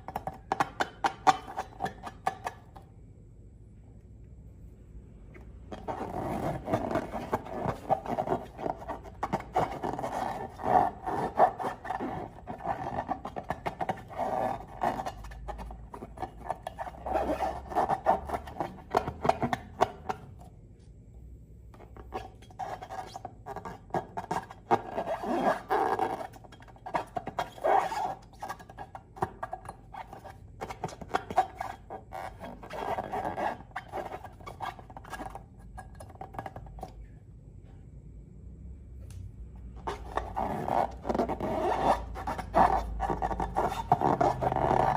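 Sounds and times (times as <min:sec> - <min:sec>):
squeaky rubbing of balloons: 0:05.7 - 0:20.0, 0:21.8 - 0:36.6, 0:39.8 - 0:44.9.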